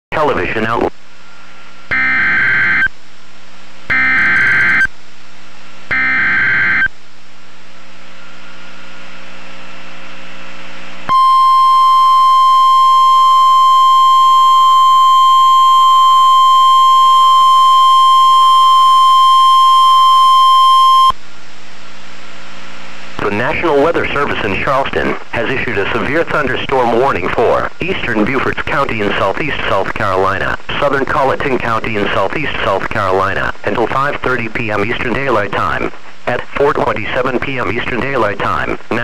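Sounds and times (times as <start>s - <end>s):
low hum: 0.9s - 39.0s
harsh warbling data screech: 1.9s - 2.9s, 3.9s - 4.9s
steady single-pitch alert tone: 1.9s - 2.9s, 3.9s - 4.9s, 5.9s - 6.9s, 11.1s - 21.2s.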